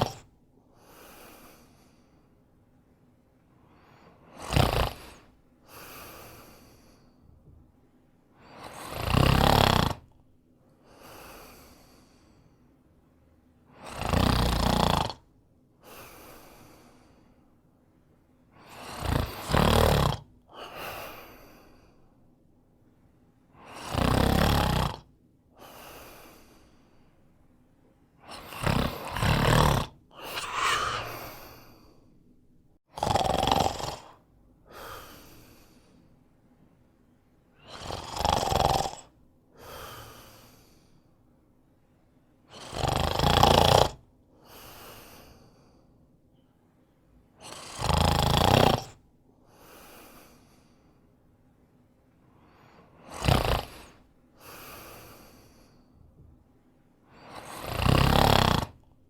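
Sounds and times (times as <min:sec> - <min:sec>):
man snoring: 0:00.0 - 0:00.3, 0:03.9 - 0:07.0, 0:08.5 - 0:10.2, 0:13.8 - 0:15.3, 0:18.6 - 0:21.8, 0:23.6 - 0:26.6, 0:28.2 - 0:32.0, 0:32.9 - 0:35.7, 0:37.6 - 0:40.8, 0:42.5 - 0:44.0, 0:47.4 - 0:49.0, 0:53.0 - 0:55.7, 0:57.2 - 0:58.9.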